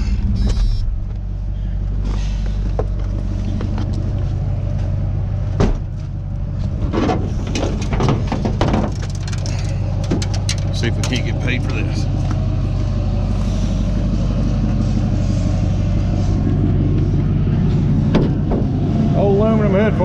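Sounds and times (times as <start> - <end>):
truck engine running: 0.0 - 20.0
clicks and knocks: 6.9 - 11.2.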